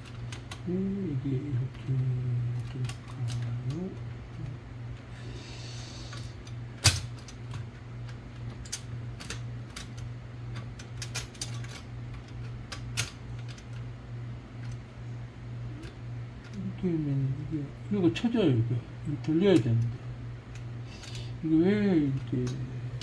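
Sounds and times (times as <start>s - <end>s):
steady low hum: 0.0s - 23.0s
typewriter mechanism clicking: 1.7s - 4.4s, 6.1s - 13.9s.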